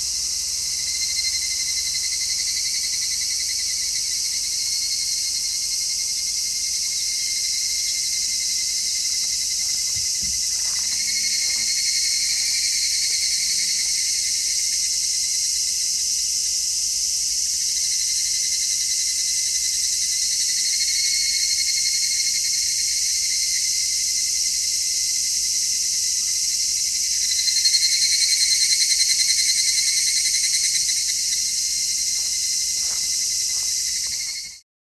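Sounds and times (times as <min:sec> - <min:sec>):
cicadas shrill hiss: 0:00.0 - 0:34.6
pulsing cicada call: 0:00.0 - 0:34.6.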